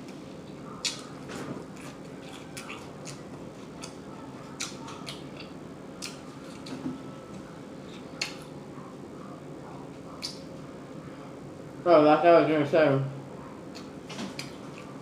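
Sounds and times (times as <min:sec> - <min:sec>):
chewing with mouth smacks: 0:00.0 - 0:09.0, 0:09.7 - 0:10.6, 0:13.4 - 0:15.0
steady low hum: 0:00.0 - 0:15.0.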